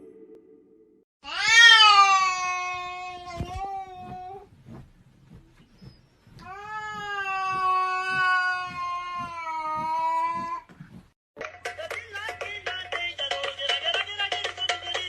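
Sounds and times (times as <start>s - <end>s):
cat meowing: 1.2s - 4.4s, 6.5s - 10.5s
music: 11.4s - 15.0s.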